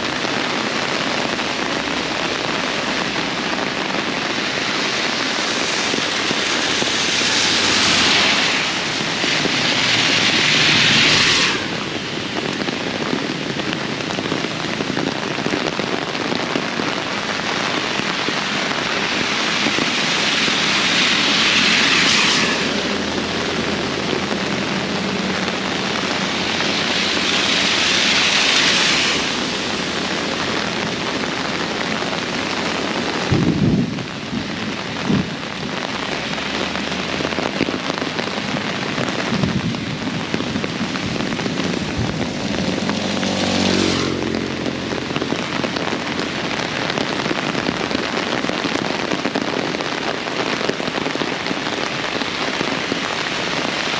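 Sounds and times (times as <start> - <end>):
heavy rain pouring: 0.0 - 53.9.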